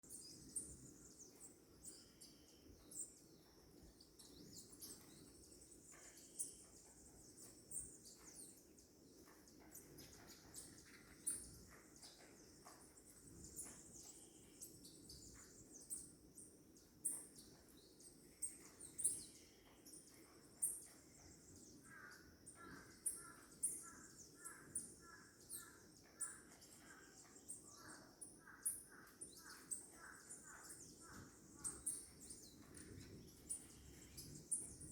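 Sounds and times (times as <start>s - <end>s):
canaries chirping: 17.0s - 34.9s.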